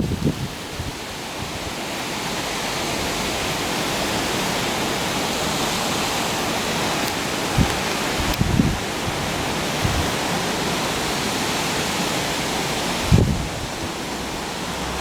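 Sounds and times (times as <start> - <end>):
wind buffeting microphone: 0.0 - 1.7, 6.4 - 10.9, 12.7 - 15.0
wind rushing through trees: 0.0 - 15.0.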